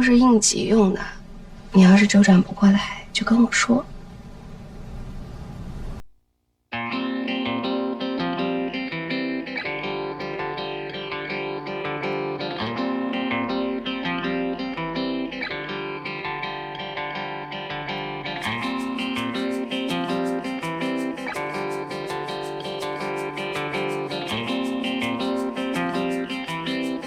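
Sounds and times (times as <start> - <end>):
plucked guitar music: 6.7 - 27.0.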